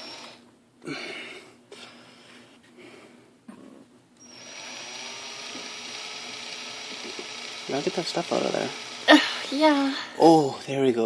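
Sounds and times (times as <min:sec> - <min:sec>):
small electric drill whining: 0:00.0 - 0:00.4, 0:04.2 - 0:09.9.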